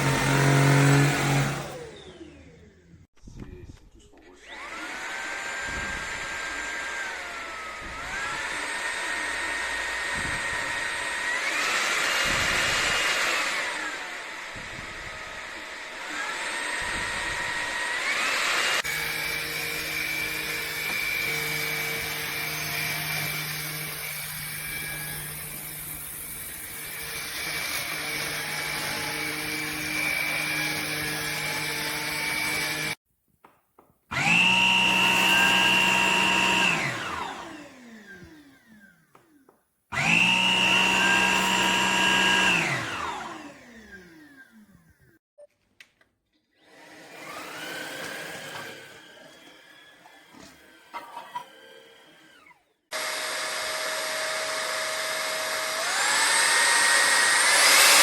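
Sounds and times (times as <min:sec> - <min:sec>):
stick vacuum motor whining: 0:00.0 - 0:02.9, 0:04.3 - 0:33.0, 0:34.1 - 0:45.2, 0:46.6 - 0:58.0.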